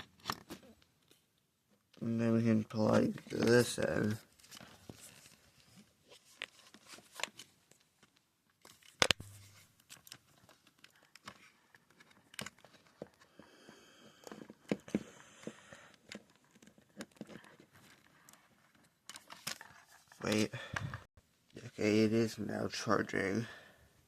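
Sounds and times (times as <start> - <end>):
charging cable handling clicks: 8.1 - 9.2, 9.8 - 13.2.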